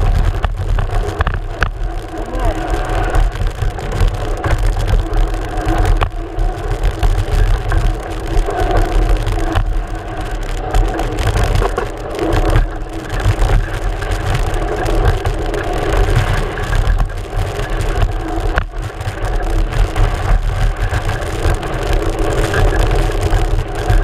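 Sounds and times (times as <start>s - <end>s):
bike tyre rumble: 0.0s - 24.0s
wind rush: 0.0s - 24.0s.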